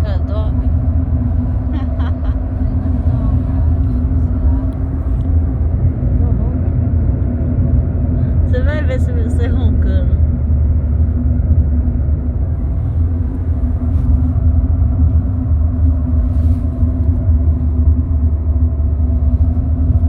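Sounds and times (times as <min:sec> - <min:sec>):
road and engine drone inside car: 0:00.0 - 0:20.0.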